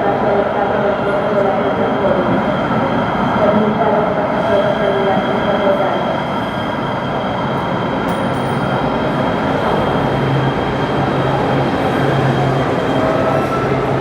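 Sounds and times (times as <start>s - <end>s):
train wheels and motors rumbling: 7.4s - 14.0s.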